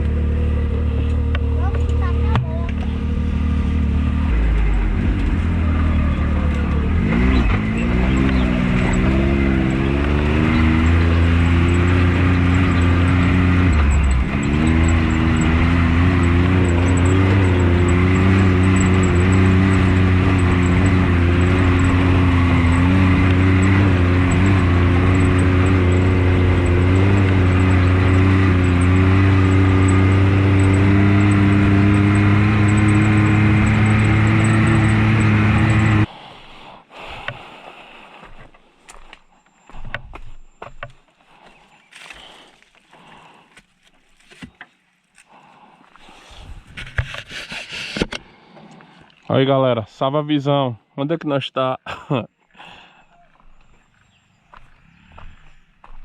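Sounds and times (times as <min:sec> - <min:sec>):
engine pulling under way: 0:00.0 - 0:36.1.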